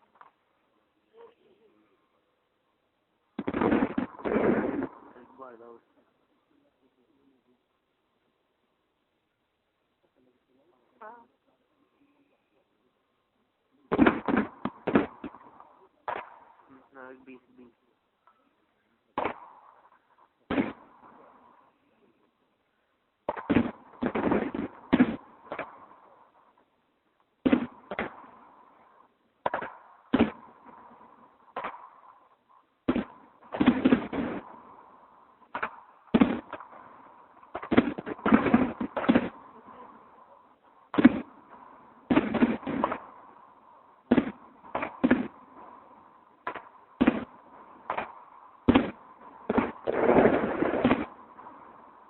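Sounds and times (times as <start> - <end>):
crackling fireworks: 0.0 - 2.4, 3.2 - 8.3, 10.0 - 52.0
fireworks bangs: 3.3 - 6.1, 13.8 - 17.8, 18.8 - 22.3, 23.2 - 26.8, 27.4 - 52.0.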